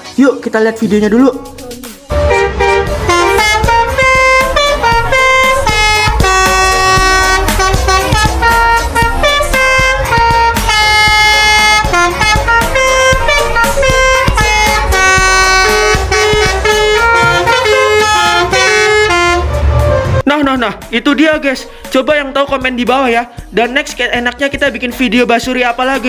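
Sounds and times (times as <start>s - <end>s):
multi-tone bus horn melody: 2.1s - 20.3s.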